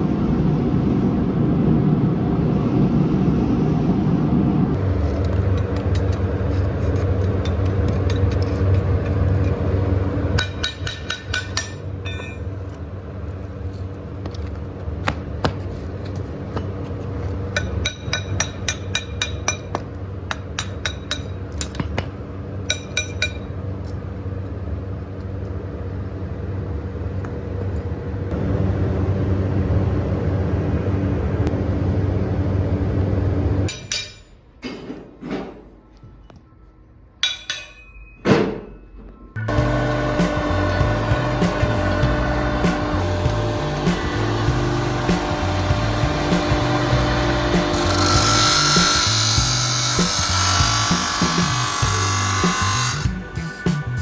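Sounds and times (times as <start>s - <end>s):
steady low hum: 0.0s - 34.3s, 39.3s - 54.0s
hammer striking metal: 10.4s - 12.5s, 17.6s - 22.1s, 22.7s - 23.5s, 33.7s - 35.8s, 37.2s - 54.0s.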